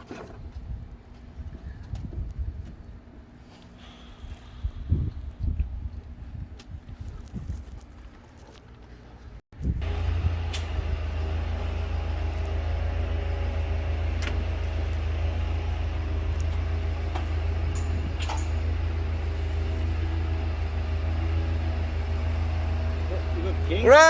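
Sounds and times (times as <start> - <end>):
engine humming steadily: 7.7 - 24.0.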